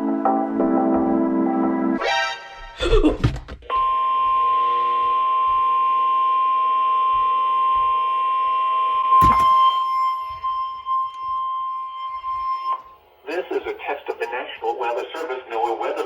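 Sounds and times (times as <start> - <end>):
steady warning alarm tone: 3.7 - 13.2
radio hiss and hum: 13.2 - 16.0
sharp radio crackle: 13.2 - 16.0.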